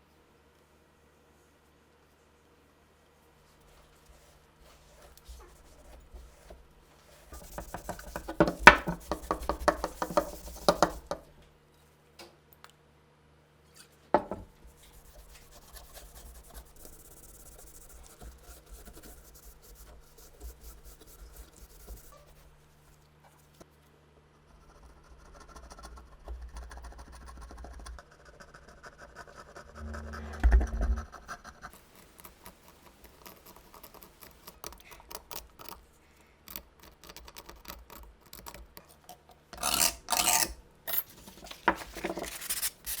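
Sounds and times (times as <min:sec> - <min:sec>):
light rubbing: 0:03.9 - 0:11.3.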